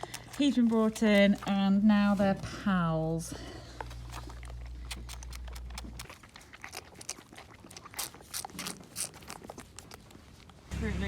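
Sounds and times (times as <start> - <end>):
sharp clicks and crunches: 3.7 - 10.7
low hum: 10.7 - 11.0.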